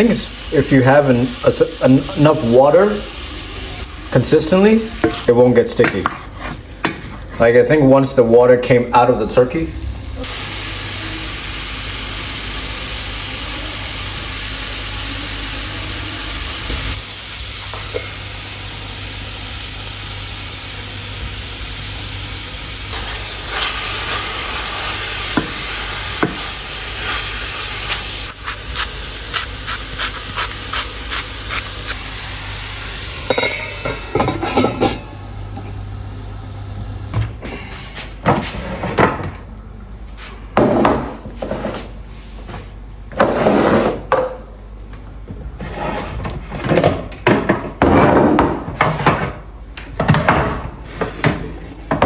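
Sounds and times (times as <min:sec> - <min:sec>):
meat sizzling in a frying pan: 0:00.0 - 0:05.7, 0:09.7 - 0:34.6.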